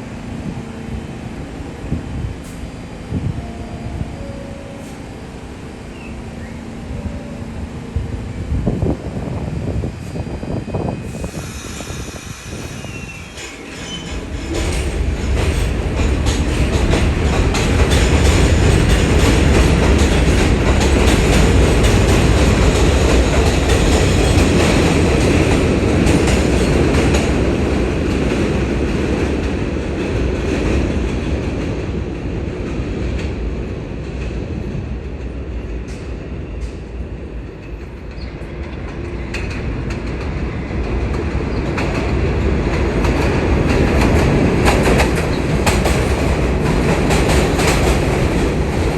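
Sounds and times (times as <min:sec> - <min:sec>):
subway train rumble: 0:00.0 - 0:48.9.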